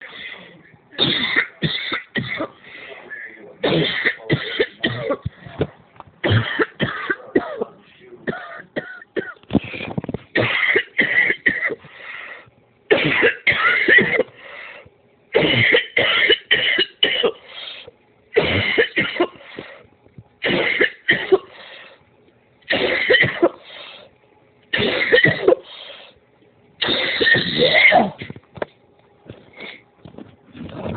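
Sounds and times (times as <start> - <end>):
girl coughing: 3.6 - 5.3, 6.2 - 7.7, 10.4 - 11.8, 12.9 - 14.3, 15.4 - 17.4, 18.4 - 19.4, 22.7 - 23.6, 24.8 - 25.7, 26.8 - 28.3.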